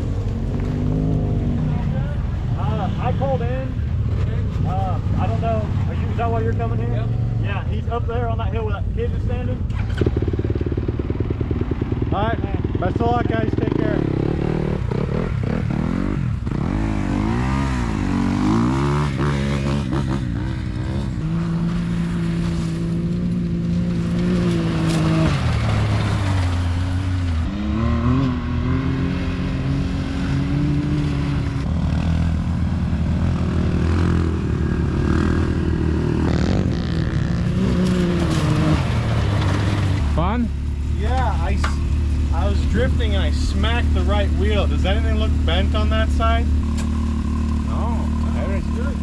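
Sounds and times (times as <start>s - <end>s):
vehicle engine revving while driving: 13.1s - 49.0s.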